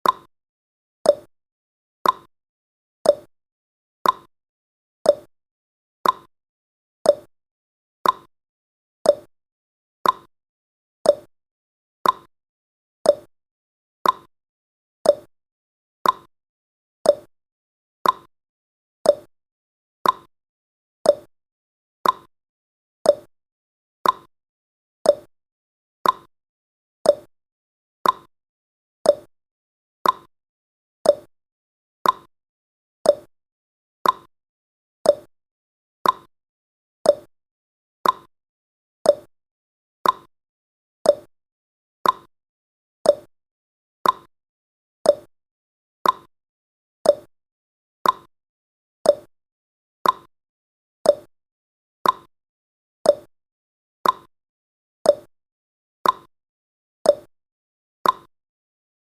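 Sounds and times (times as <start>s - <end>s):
clock ticking: 38.0s - 38.3s, 42.0s - 42.3s, 44.0s - 44.3s.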